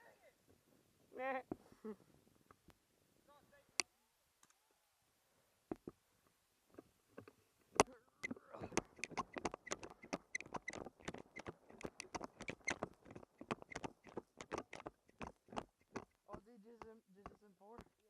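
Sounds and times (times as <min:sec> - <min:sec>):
faint clicks: 0:06.7 - 0:18.0.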